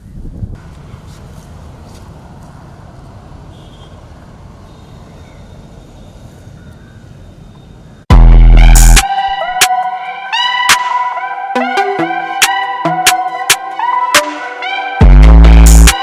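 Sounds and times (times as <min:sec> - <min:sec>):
loud electronic music: 0:08.1 - 0:16.0.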